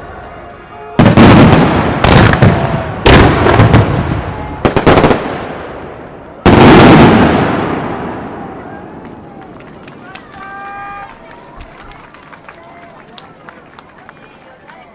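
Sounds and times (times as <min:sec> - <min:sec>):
firework booms: 0:01.0 - 0:09.1
sharp firework cracks: 0:01.0 - 0:10.0.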